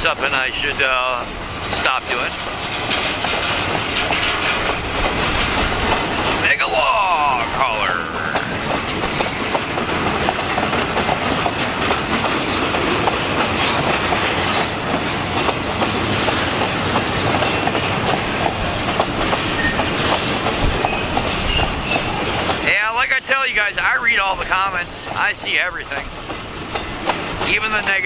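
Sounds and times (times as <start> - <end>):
freight train wheels clacking: 0.0 - 28.0
wheels squeaking: 8.0 - 22.8.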